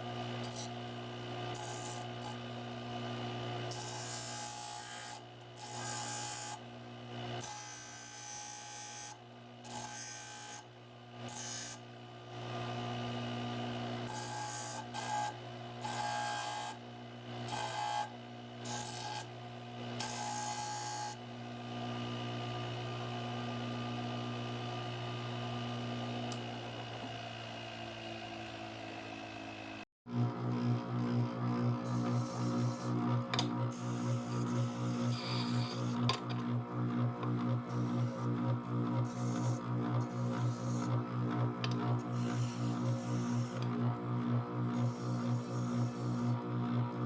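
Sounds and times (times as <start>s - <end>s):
power tool motor humming: 0.0s - 6.6s, 31.8s - 43.8s, 44.7s - 46.4s.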